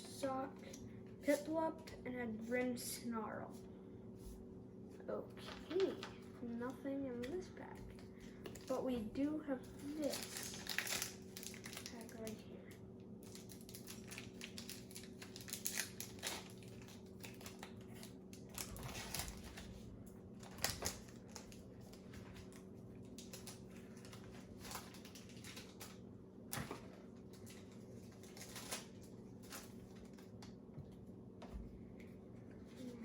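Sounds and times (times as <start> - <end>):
foil wrapper crinkling: 9.7 - 12.4, 13.2 - 19.8, 20.4 - 26.0, 27.3 - 30.4.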